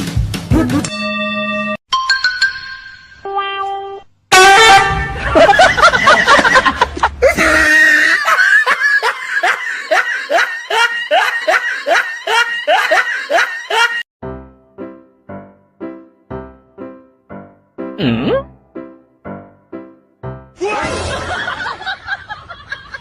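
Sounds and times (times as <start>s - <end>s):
person laughing: 0.5s - 0.9s, 5.1s - 14.0s.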